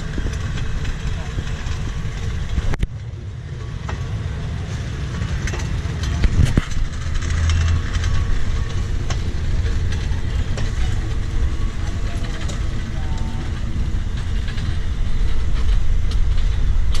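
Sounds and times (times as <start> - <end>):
diesel locomotive engine rumble: 0.0 - 17.0.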